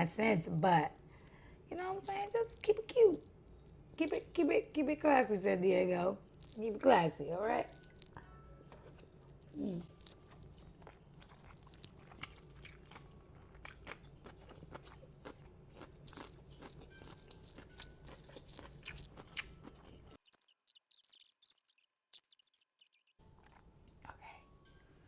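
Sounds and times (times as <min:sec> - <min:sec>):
chewing crunchy food: 0:06.2 - 0:24.2.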